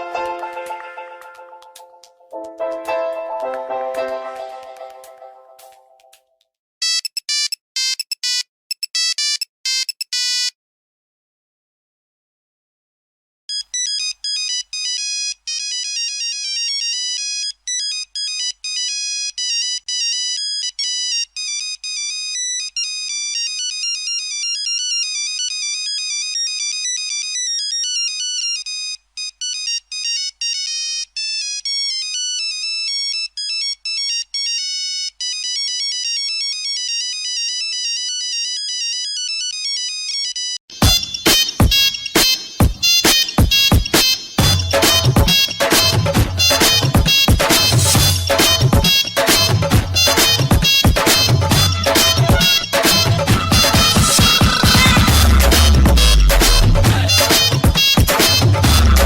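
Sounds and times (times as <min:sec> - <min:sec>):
electronic phone ringtone melody: 0:06.8 - 0:10.5
pulsing phone ringtone: 0:06.8 - 0:10.5.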